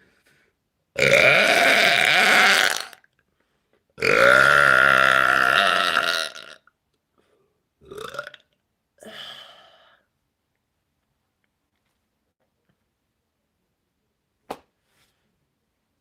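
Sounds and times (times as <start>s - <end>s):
deep belch: 1.0s - 3.0s, 4.0s - 6.7s, 7.8s - 8.4s.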